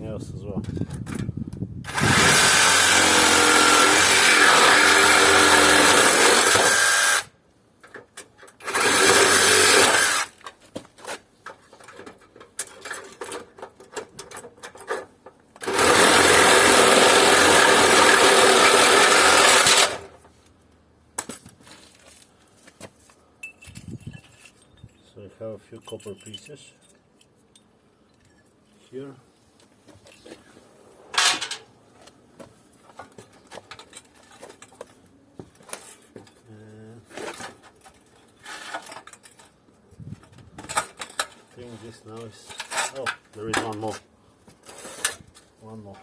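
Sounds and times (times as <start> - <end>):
power cutter cutting metal tubing: 1.9 - 7.3, 8.6 - 10.4, 15.6 - 20.1
metal pieces knocking and clinking: 23.4 - 25.1.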